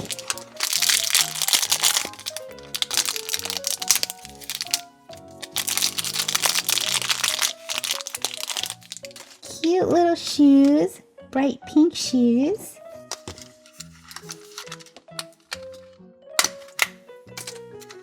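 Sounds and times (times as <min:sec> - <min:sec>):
plastic wrapper crinkling: 0:00.0 - 0:09.7, 0:13.1 - 0:15.6
background music: 0:00.0 - 0:18.0.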